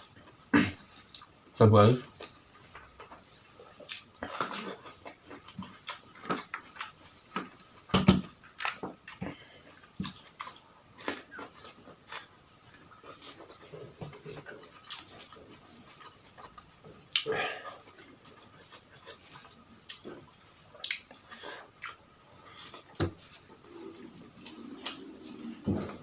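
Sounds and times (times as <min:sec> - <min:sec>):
crunching and chewing: 0:02.2 - 0:26.0
wet mouth clicks and smacks: 0:20.8 - 0:21.2.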